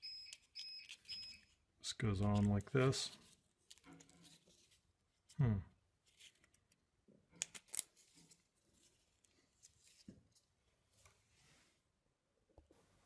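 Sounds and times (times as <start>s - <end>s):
person humming: 5.4s - 5.7s.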